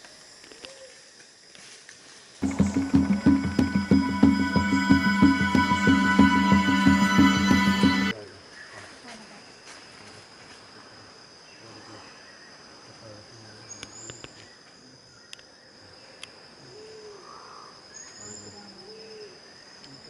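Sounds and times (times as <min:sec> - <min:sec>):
high insect drone: 0:02.4 - 0:08.1
low hooting notes: 0:02.4 - 0:08.1.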